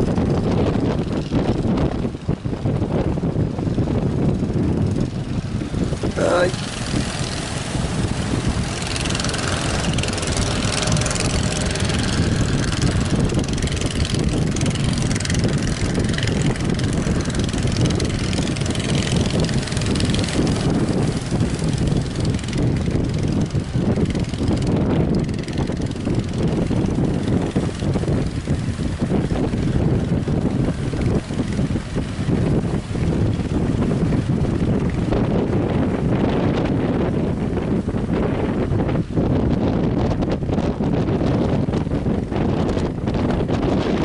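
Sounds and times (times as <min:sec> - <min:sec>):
wind buffeting microphone: 0:00.0 - 0:44.0
sea waves: 0:05.2 - 0:26.3.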